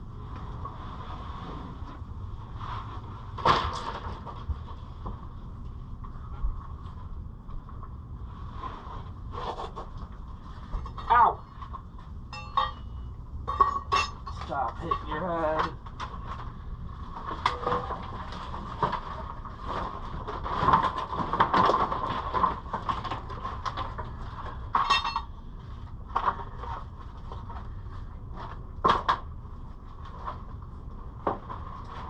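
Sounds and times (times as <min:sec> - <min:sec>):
wood and debris knocking and scraping: 0:03.3 - 0:05.2, 0:13.5 - 0:25.2
ringing metal clink: 0:12.3 - 0:14.3.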